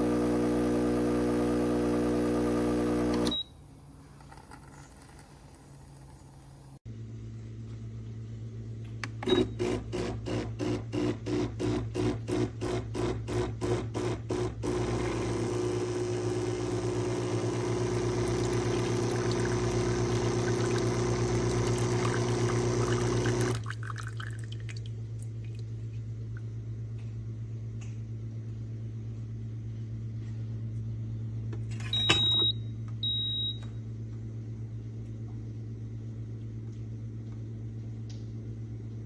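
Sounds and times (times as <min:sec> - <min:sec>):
espresso machine pump: 0:00.0 - 0:03.3, 0:14.0 - 0:23.6.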